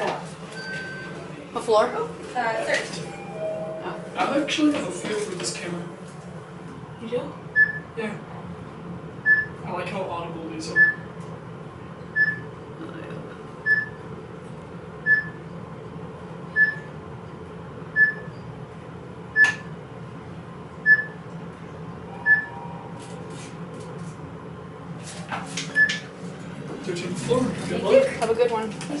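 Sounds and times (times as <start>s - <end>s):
elevator car hum: 0.0s - 29.0s
high electronic elevator beep: 3.0s - 4.2s, 7.5s - 7.9s, 9.2s - 9.6s, 10.7s - 11.1s, 12.1s - 12.4s, 13.6s - 14.0s, 15.0s - 15.4s, 16.5s - 16.9s, 17.9s - 18.4s, 20.8s - 21.2s, 22.1s - 22.9s.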